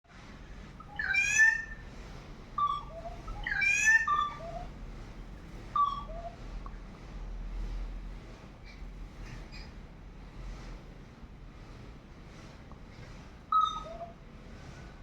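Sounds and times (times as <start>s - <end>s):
bird calling: 0.8s - 1.8s, 2.6s - 4.7s, 5.7s - 6.4s, 13.5s - 14.2s.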